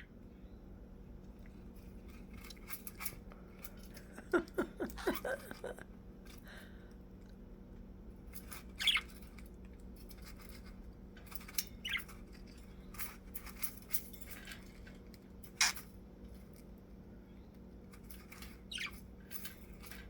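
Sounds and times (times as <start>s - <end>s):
bird scratching cage floor: 8.3s - 16.6s.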